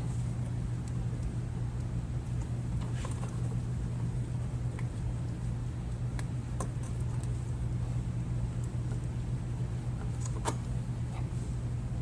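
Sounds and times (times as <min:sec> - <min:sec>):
low mechanical hum: 0:00.0 - 0:12.0
faint clicks and scrapes of hose: 0:02.4 - 0:03.6.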